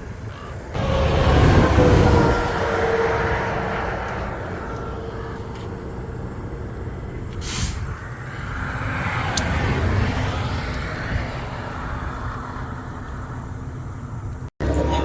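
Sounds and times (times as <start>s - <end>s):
vehicle engine rumbling: 0.0s - 14.8s
air hiss: 7.3s - 8.9s.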